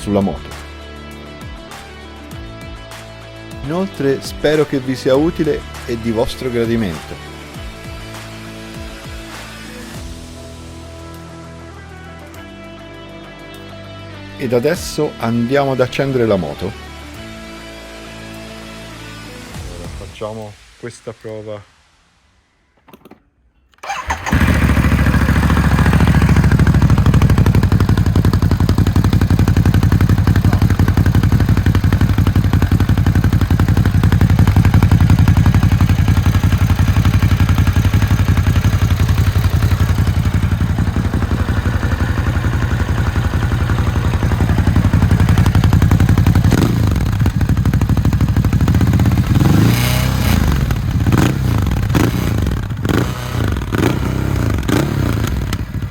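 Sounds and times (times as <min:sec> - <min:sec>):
motorcycle engine starting and idling: 0:22.8 - 0:55.9
engine revs rising and falling: 0:46.5 - 0:47.3, 0:48.7 - 0:55.6.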